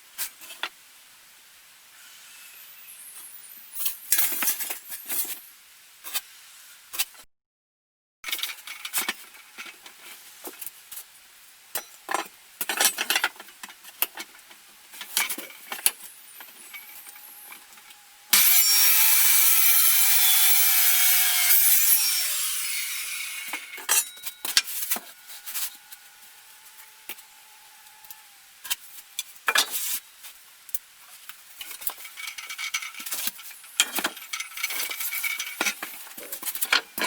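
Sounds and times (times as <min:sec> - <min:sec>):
power tool cutting wood: 0:15.4 - 0:29.3.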